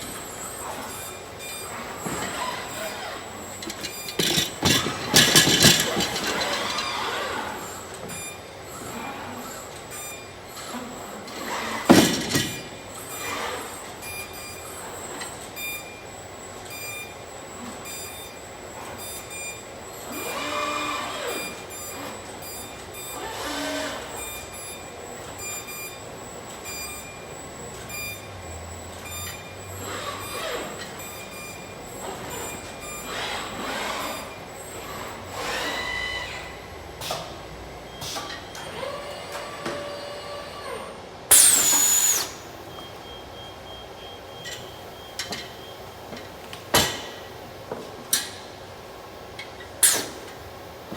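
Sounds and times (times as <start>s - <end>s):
whines from moving equipment: 0.0s - 8.2s, 10.6s - 13.8s, 26.9s - 37.2s
welding line machinery running: 1.6s - 7.8s.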